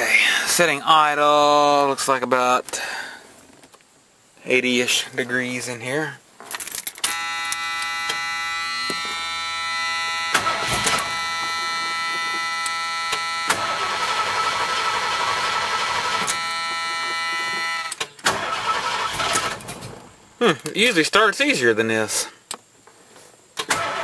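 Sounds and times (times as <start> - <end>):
steady high warning tone: 7.0 - 14.7, 16.0 - 18.0
engine cranking without starting: 10.3 - 20.1, 23.6 - 24.0.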